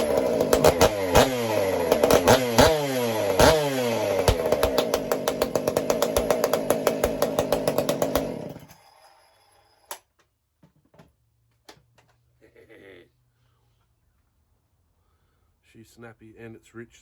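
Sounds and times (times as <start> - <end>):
chainsaw running: 0.0 - 8.8.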